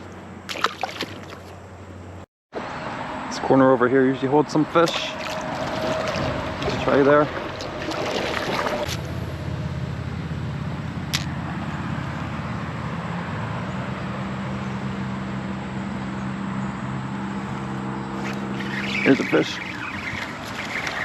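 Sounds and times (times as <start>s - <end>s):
low motor hum: 4.6s - 21.0s
sharp click: 11.1s - 11.3s.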